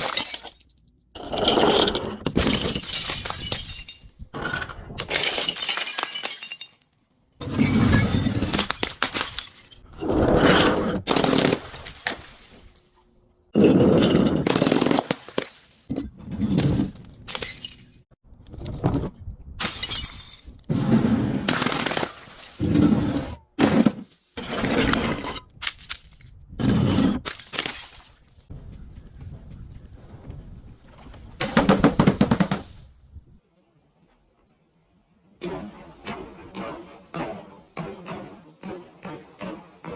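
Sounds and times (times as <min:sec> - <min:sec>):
glass bottles shattering: 0:00.0 - 0:09.8, 0:11.2 - 0:13.0, 0:16.6 - 0:18.1, 0:19.6 - 0:20.7.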